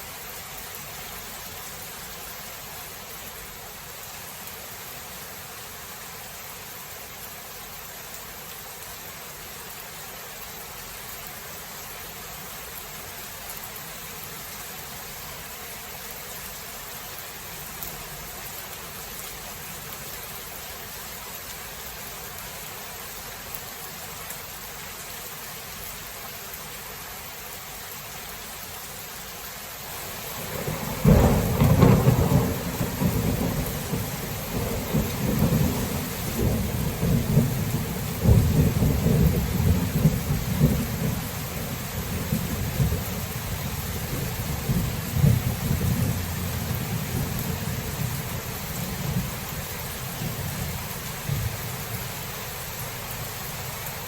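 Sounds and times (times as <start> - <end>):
rain hiss: 0.0 - 54.0
thunder clap and rumble: 30.0 - 51.7.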